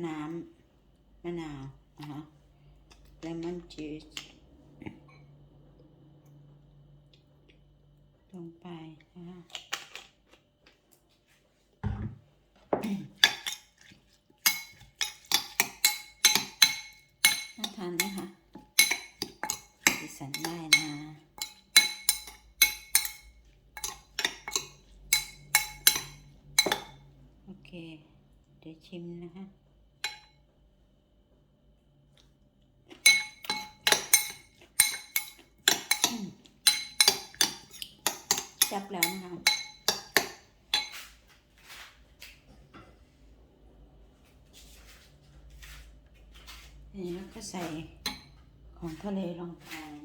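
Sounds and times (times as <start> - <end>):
utensil clinking against a bowl: 12.8 - 27.1, 30.0 - 30.4, 32.9 - 41.2, 47.1 - 49.0.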